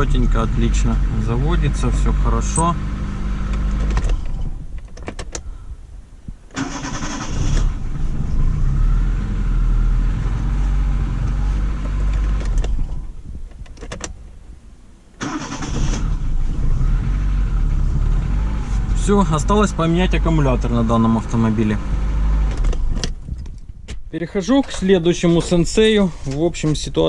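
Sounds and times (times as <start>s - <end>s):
car engine running: 0.0s - 4.5s, 15.9s - 23.3s.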